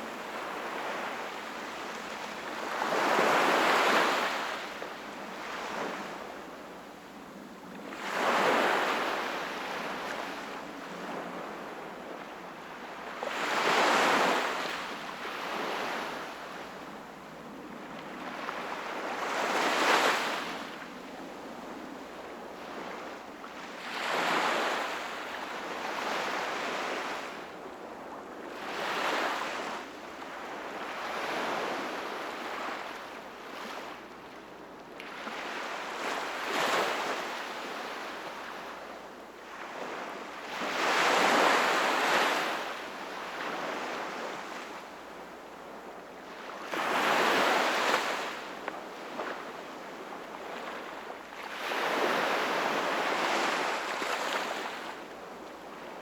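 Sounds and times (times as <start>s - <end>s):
sea waves breaking on shore: 39.5s - 45.2s, 46.2s - 56.0s.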